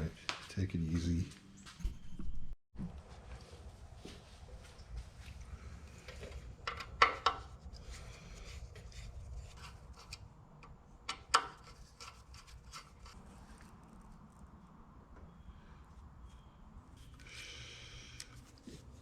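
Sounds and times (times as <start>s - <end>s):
hand tools clicking and scraping: 11.1s - 14.2s.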